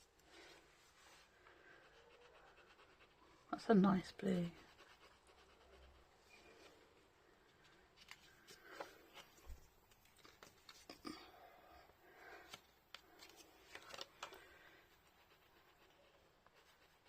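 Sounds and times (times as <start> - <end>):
dry colour scratching on paper: 1.7 - 3.3, 4.2 - 6.6, 14.8 - 17.0.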